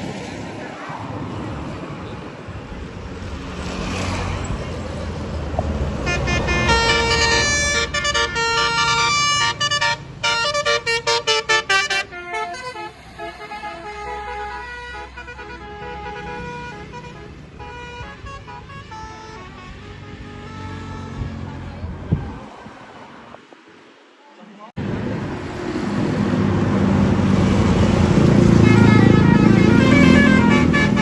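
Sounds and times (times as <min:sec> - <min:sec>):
bus engine rumble: 0:00.0 - 0:31.0
musical air horn playing a tune: 0:06.0 - 0:21.3, 0:28.6 - 0:31.0.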